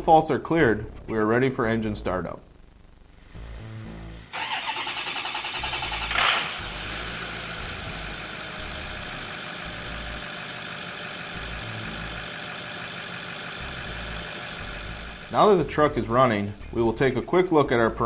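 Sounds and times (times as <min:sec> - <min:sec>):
diesel engine idling: 0:04.2 - 0:16.8
starter cranking engine: 0:04.3 - 0:15.3.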